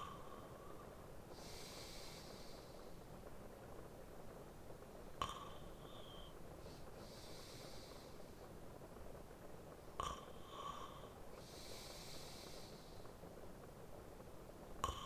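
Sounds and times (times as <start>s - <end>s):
man breathing slowly: 0.0s - 3.3s, 5.2s - 8.6s, 10.0s - 13.4s
faint steady rain: 0.0s - 15.0s.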